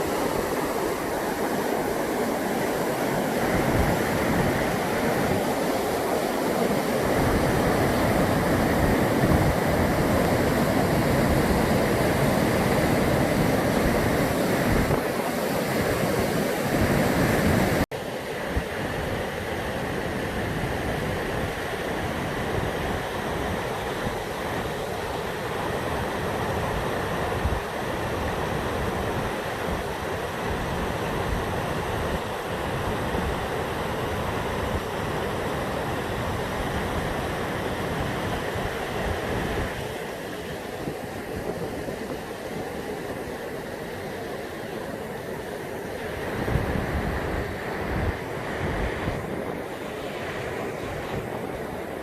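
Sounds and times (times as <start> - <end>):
wind rumble on microphone: 0.0 - 17.8, 18.4 - 52.0
waterfall rushing: 0.0 - 17.9.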